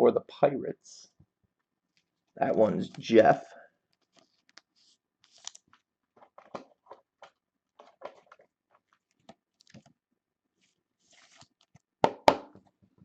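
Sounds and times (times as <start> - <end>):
cards and packaging rustling: 2.0 - 10.0, 10.6 - 12.0.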